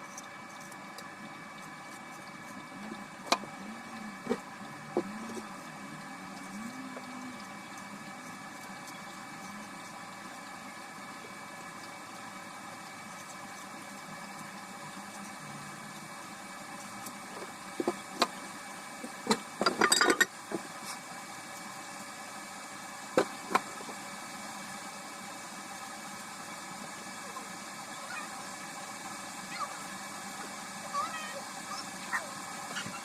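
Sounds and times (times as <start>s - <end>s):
steady background hum: 0.0s - 33.0s
kitchenware clinking: 19.6s - 20.3s.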